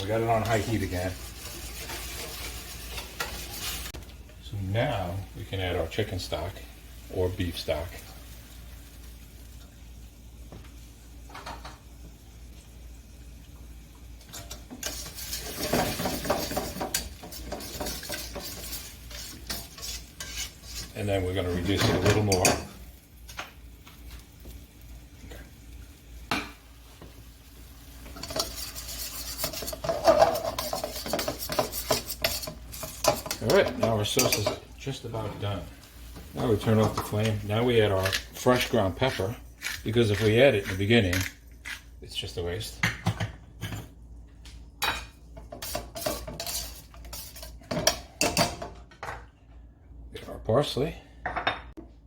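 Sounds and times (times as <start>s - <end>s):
spatula scraping a pan: 0.0s - 4.0s, 14.4s - 22.7s, 28.0s - 34.6s, 45.6s - 48.1s
sauce sizzling in a frying pan: 0.0s - 39.3s.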